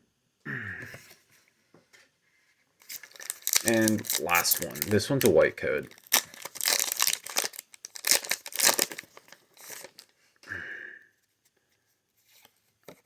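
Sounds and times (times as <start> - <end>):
foil wrapper crinkling and tearing: 2.8 - 10.2.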